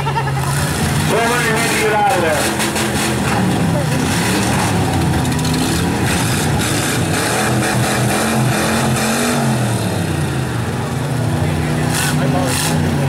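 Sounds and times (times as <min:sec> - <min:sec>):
car engines revving: 0:00.0 - 0:13.0.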